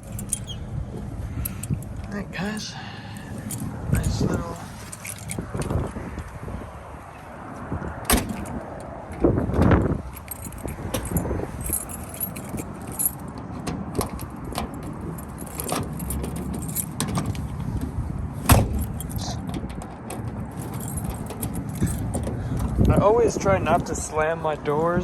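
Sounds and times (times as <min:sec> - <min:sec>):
keys jangling: 0:00.0 - 0:00.6, 0:01.4 - 0:06.1, 0:08.0 - 0:23.0
car door shutting: 0:08.0 - 0:08.6, 0:15.6 - 0:22.8.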